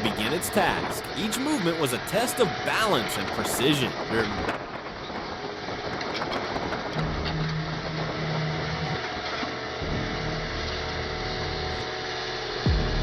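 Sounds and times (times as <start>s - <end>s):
excavator diesel engine running: 0.0s - 4.5s.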